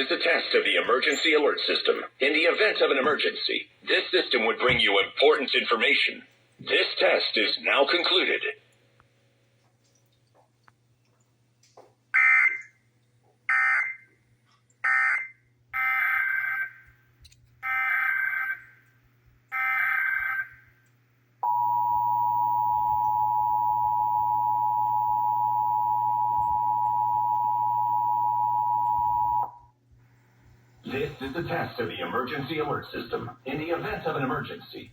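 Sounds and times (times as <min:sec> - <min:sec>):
steady two-tone attention signal: 0:21.4 - 0:29.6.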